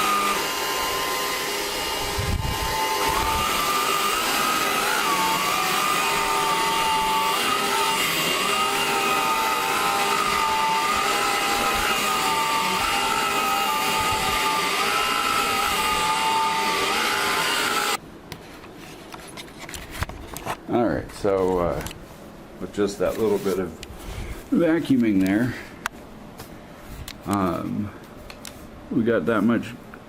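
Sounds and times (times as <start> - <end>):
cordless vacuum running: 0.0 - 18.0.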